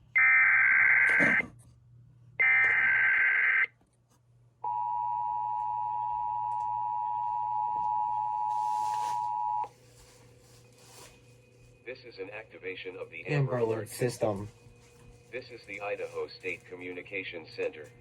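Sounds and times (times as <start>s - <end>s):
two-tone attention signal: 4.7s - 9.7s.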